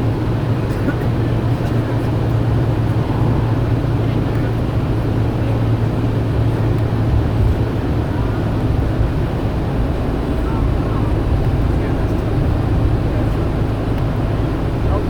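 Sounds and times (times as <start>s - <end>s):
engine and blower hum: 0.0s - 15.0s
air rushing from vents: 1.8s - 7.7s.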